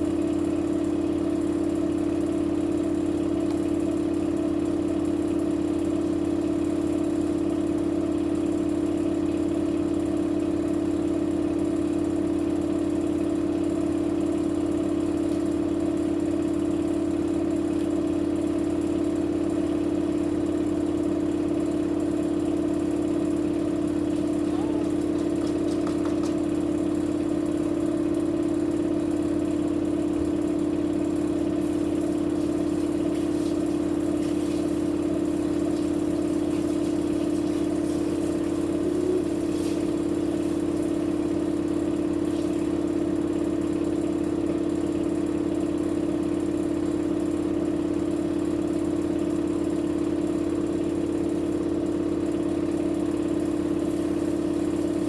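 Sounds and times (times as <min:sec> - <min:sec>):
washing machine drum spinning: 0:12.7 - 0:46.5, 0:49.6 - 0:55.0.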